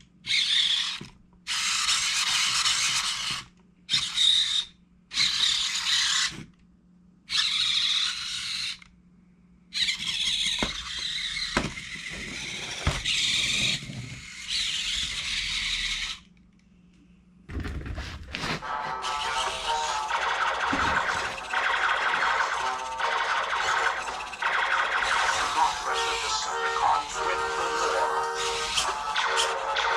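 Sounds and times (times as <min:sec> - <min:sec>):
servo motors whining: 0:09.7 - 0:16.3, 0:23.8 - 0:29.9
music: 0:18.6 - 0:24.4, 0:25.0 - 0:29.9.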